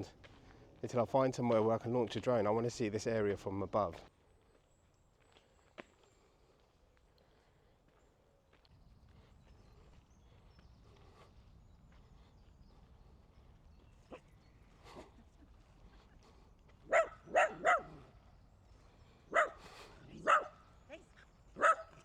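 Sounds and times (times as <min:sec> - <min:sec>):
dog barking aggressively: 0:16.9 - 0:18.1, 0:19.3 - 0:19.6, 0:20.2 - 0:20.6, 0:21.6 - 0:22.0.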